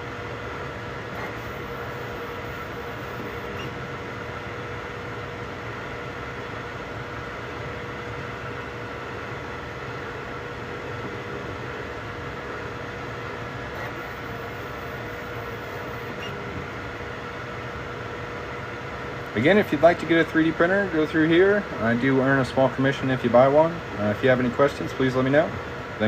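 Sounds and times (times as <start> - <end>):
three d printers humming: 0.0 - 26.0
constant tone: 1.0 - 4.0, 13.7 - 17.0.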